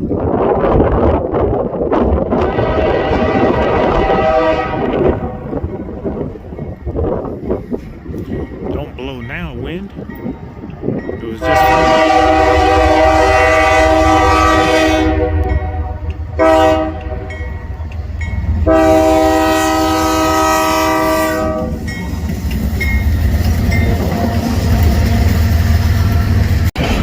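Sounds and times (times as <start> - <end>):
low train rumble: 0.0 - 27.0
locomotive air horn blasts: 2.4 - 5.4, 11.4 - 17.4, 18.6 - 21.8.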